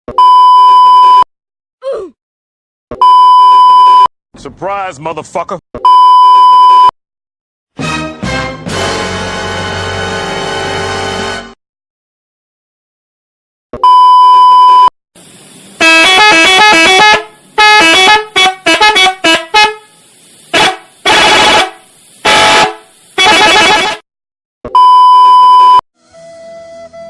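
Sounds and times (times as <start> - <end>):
censor beep: 0.1 - 1.3, 3.0 - 4.1, 5.8 - 6.9, 13.8 - 14.9, 24.7 - 25.8
car horn honking: 15.8 - 24.0.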